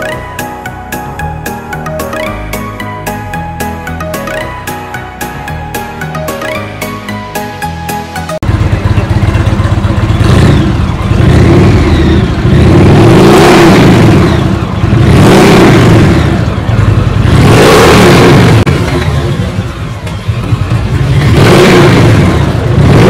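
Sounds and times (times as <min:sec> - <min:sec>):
engine revving hard: 0:10.0 - 0:18.9, 0:21.0 - 0:23.0.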